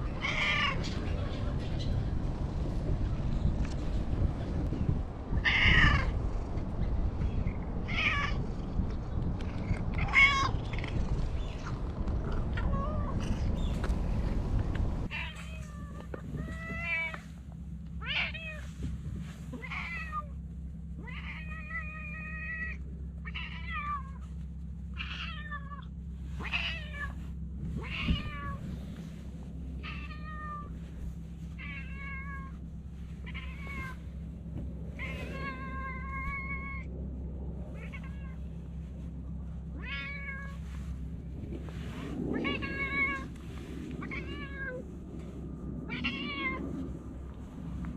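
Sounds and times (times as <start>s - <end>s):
steady low hum: 0.0s - 47.9s
cat meowing: 0.2s - 0.8s, 5.4s - 6.2s, 7.8s - 8.4s, 9.6s - 11.0s, 15.1s - 17.2s, 19.5s - 20.3s, 21.0s - 24.2s, 25.0s - 27.2s, 27.8s - 28.6s, 31.6s - 32.6s, 33.2s - 34.0s, 35.0s - 36.9s, 37.8s - 38.4s, 39.8s - 40.6s, 42.3s - 43.4s, 44.0s - 44.8s, 45.9s - 46.6s.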